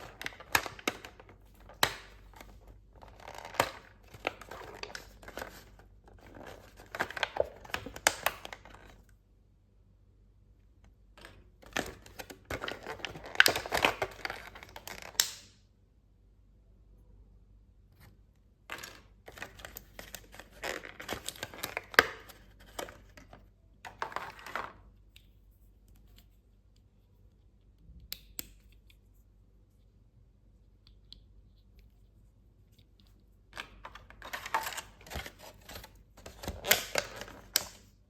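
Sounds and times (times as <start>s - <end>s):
packaging tearing and crinkling: 33.6s - 37.8s.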